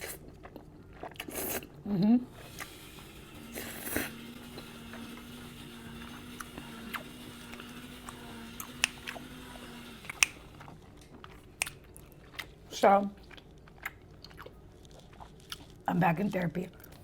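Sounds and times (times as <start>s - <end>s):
close-up chewing: 0.0s - 5.0s, 10.0s - 17.0s
faint steady hum: 0.0s - 17.0s
wet mouth clicks and smacks: 11.6s - 12.1s.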